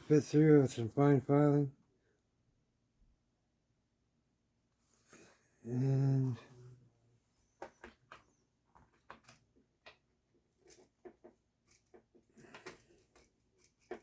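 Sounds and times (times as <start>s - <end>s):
plastic parts clicking and tapping: 7.6s - 14.0s.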